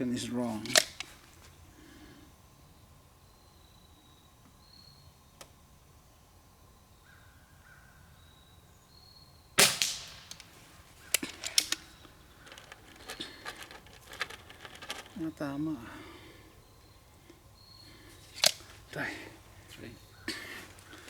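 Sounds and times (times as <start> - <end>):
sharp clicks and knocks: 0.6 - 1.1, 9.6 - 15.2, 18.4 - 18.7
air pistol shot: 9.6 - 11.8.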